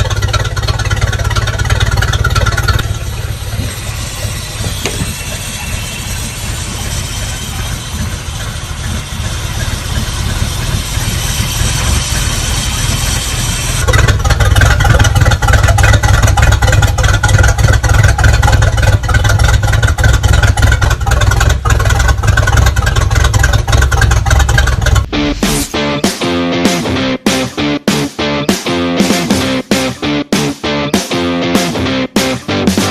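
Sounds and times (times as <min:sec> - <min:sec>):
boat engine running: 0:00.0 - 0:26.6.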